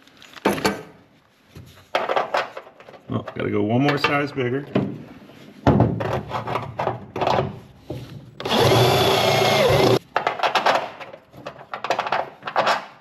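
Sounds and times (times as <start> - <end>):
tools knocking and clattering: 0.4 - 5.0, 5.6 - 8.1, 8.8 - 13.0
power drill drilling metal: 8.4 - 10.0.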